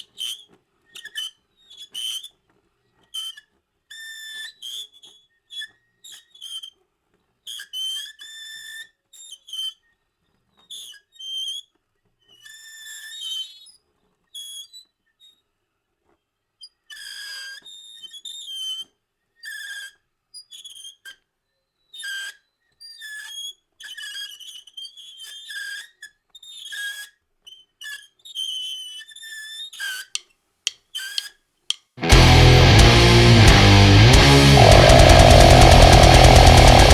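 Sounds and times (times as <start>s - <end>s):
loud distorted grindcore music: 32.0s - 36.9s.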